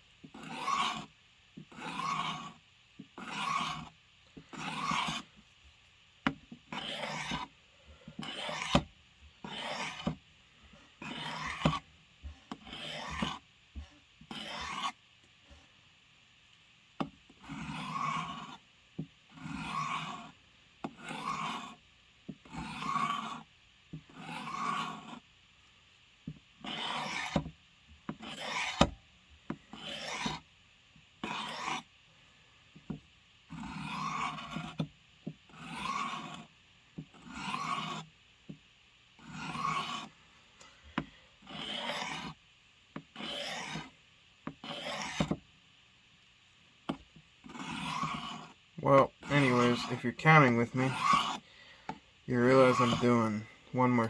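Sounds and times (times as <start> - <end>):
blade rasping on sharpener: 0.4 - 1.1, 1.7 - 2.6, 3.2 - 3.9, 4.5 - 5.3, 6.7 - 7.5, 8.2 - 10.2, 11.0 - 11.8, 12.7 - 13.4, 14.3 - 15.0, 17.4 - 18.6, 19.3 - 21.8, 22.5 - 23.5, 24.1 - 25.2, 26.6 - 27.5, 28.2 - 29.0, 29.7 - 30.4, 31.2 - 31.9, 33.5 - 34.8, 35.5 - 36.5, 37.2 - 38.1, 39.2 - 40.1, 41.5 - 42.4, 43.2 - 43.9, 44.6 - 45.4, 47.5 - 48.6, 49.2 - 51.4, 52.3 - 54.0.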